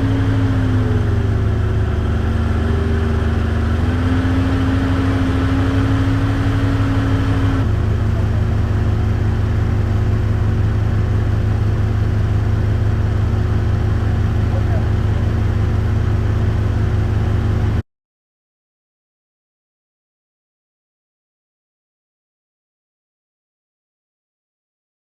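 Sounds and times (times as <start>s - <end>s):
skid steer engine with whine: 0.0s - 17.8s.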